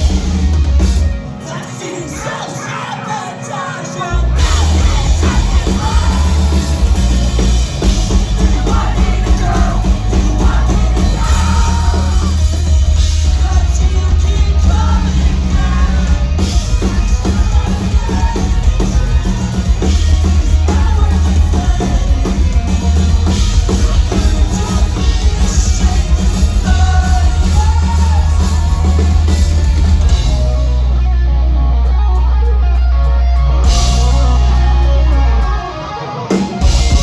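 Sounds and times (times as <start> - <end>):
heavy bass: 0.0 - 1.5, 4.1 - 37.0
busy drums: 0.0 - 1.6, 4.4 - 31.1, 32.1 - 37.0
distorted guitars: 0.0 - 37.0
high sung vocals: 1.4 - 23.0.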